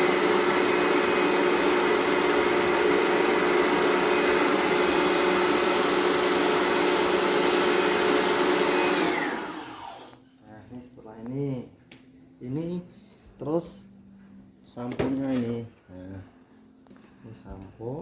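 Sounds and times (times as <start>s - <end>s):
electric motor whining: 0.0s - 10.2s.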